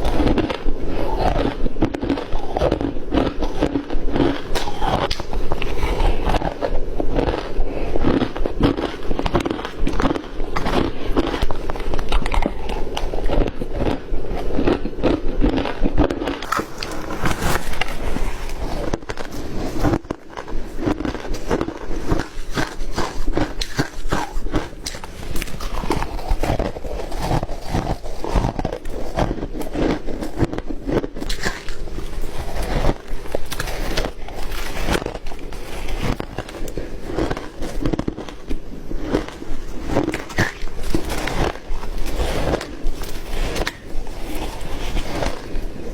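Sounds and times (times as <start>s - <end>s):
ice being chewed: 0.0s - 45.9s.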